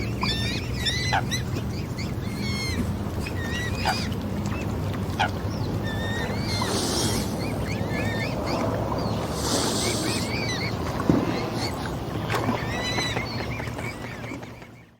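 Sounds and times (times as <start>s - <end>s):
swans calling: 0.0s - 10.8s.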